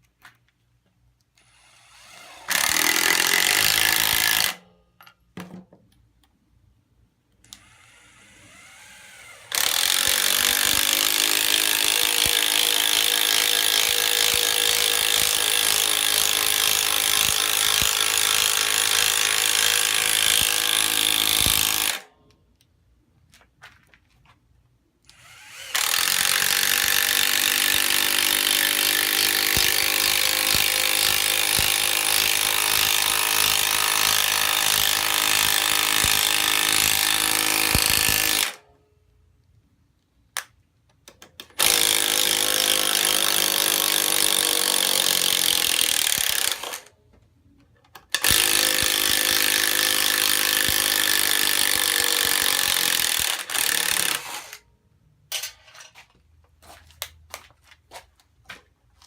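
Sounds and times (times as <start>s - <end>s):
impact driver rattling: 2.2s - 4.7s.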